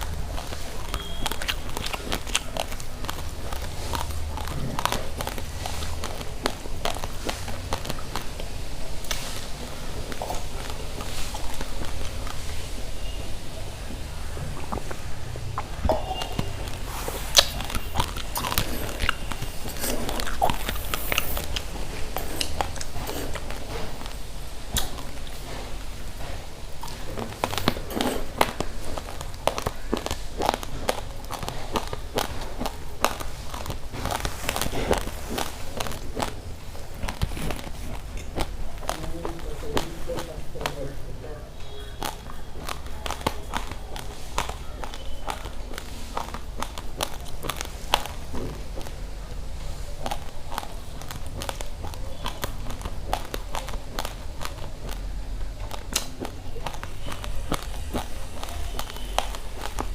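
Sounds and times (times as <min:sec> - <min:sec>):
chewing raw rice crunches: 0:00.0 - 0:59.9.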